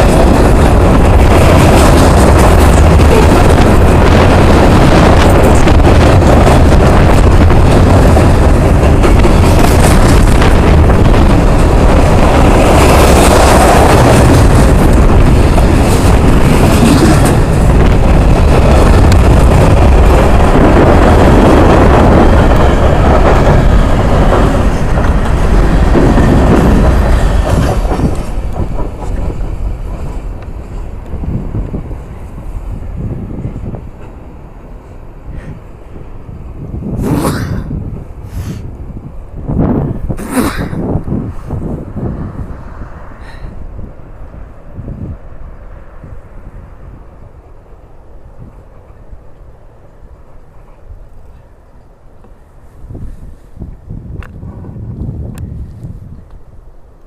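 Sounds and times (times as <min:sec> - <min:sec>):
wheels clattering over rail joints: 0:00.0 - 0:36.2
freight train rolling past: 0:00.0 - 0:57.0.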